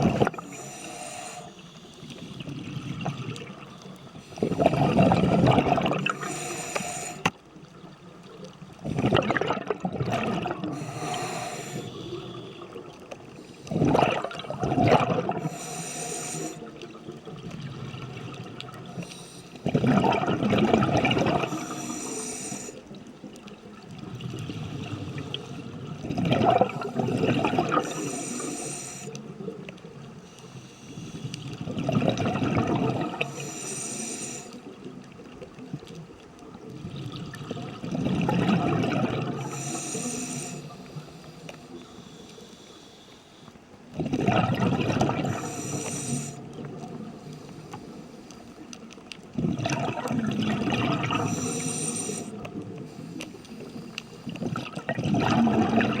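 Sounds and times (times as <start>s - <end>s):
bubbling exhale underwater: 0.0s - 0.7s, 2.2s - 7.3s, 8.8s - 13.1s, 13.7s - 19.0s, 19.6s - 22.6s, 24.0s - 28.8s, 31.4s - 34.1s, 36.7s - 40.7s, 44.0s - 47.2s, 49.4s - 52.8s, 54.4s - 56.0s
regulator hissing inhale: 0.3s - 2.9s, 6.0s - 7.4s, 10.6s - 13.8s, 15.4s - 16.9s, 18.9s - 19.7s, 21.4s - 23.0s, 27.7s - 29.5s, 30.2s - 31.6s, 33.1s - 34.9s, 39.4s - 43.7s, 45.2s - 46.6s, 47.2s - 48.7s, 51.2s - 54.5s.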